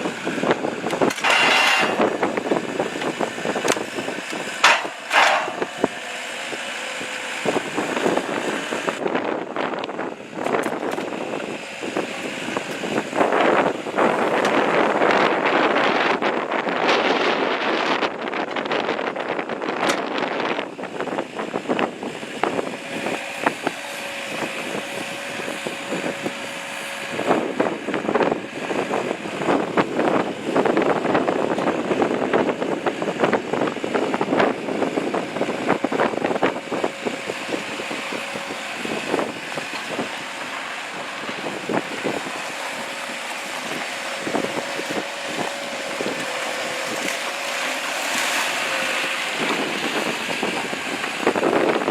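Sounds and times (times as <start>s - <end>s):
excavator engine under load: 0.0s - 51.9s
hydraulic whine: 0.0s - 51.9s
machine knocks and clatter: 4.6s - 5.8s.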